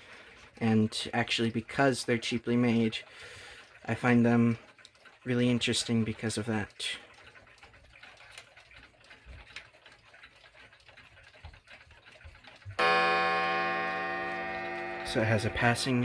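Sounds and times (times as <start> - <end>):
wall clock ticking: 1.4 - 16.0
clock gong strike ringing: 12.8 - 16.0.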